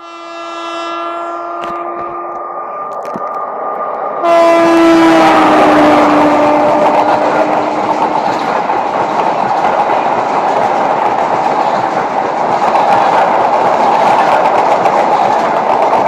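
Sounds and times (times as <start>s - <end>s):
train horn: 0.0s - 2.5s, 4.2s - 8.2s
train wheels rumbling on rails: 1.4s - 16.0s.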